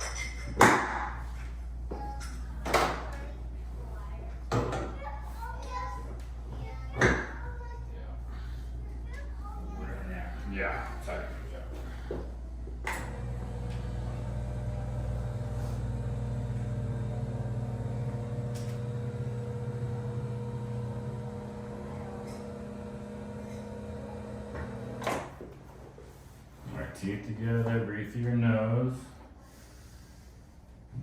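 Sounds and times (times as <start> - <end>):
motor humming: 12.8 - 25.3.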